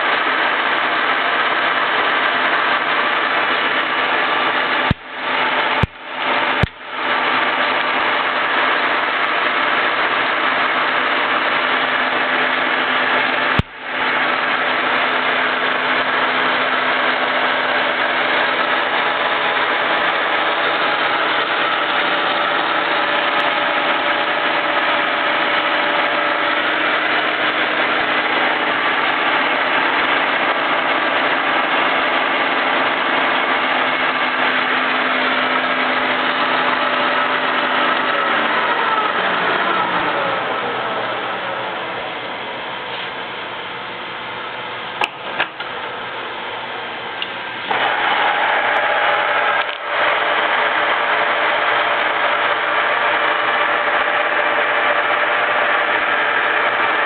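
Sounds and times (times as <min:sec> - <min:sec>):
lathe running: 0:00.0 - 0:57.0.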